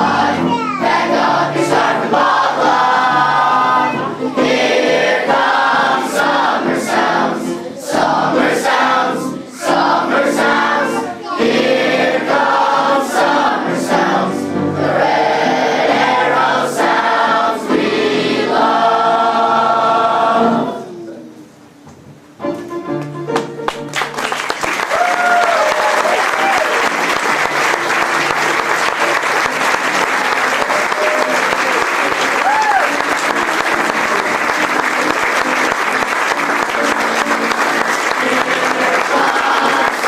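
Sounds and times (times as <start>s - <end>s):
boys' choir singing: 0.0s - 21.0s, 33.2s - 40.0s
musical backing: 0.0s - 40.0s.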